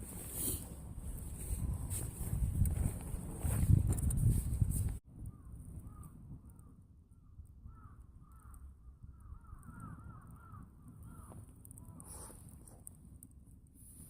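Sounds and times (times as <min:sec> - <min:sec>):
crows cawing: 0:05.3 - 0:06.6, 0:07.7 - 0:11.5.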